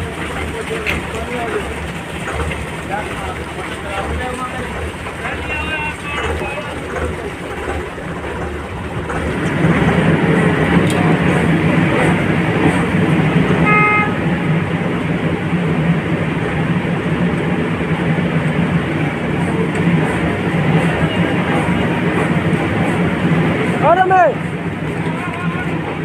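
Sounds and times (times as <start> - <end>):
heavy machinery engine droning: 0.0 - 26.0
short horn beep: 13.6 - 14.5.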